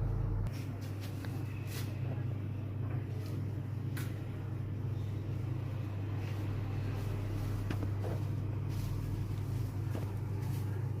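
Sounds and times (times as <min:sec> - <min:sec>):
low hum: 0:00.0 - 0:00.5.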